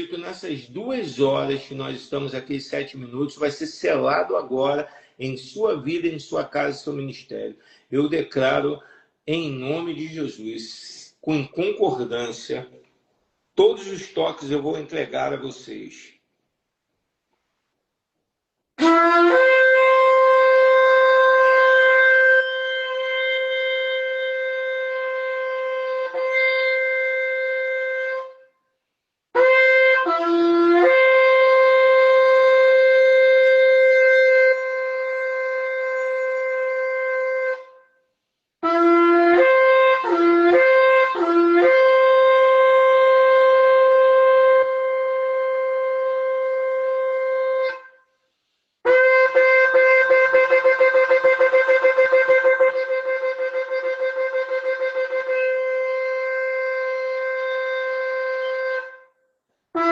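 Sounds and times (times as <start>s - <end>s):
shofar blasts: 18.8s - 28.5s, 29.3s - 37.9s, 38.6s - 48.0s, 48.8s - 59.1s.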